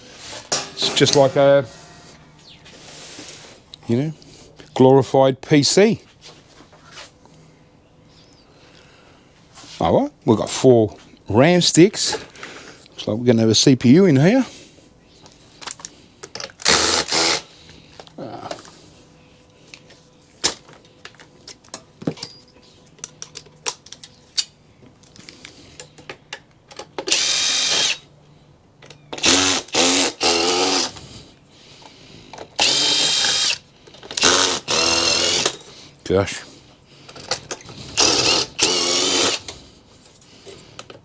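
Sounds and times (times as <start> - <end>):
power drill whining: 16.6 - 17.4, 27.1 - 28.0, 29.2 - 31.0, 32.6 - 35.7, 37.7 - 39.6.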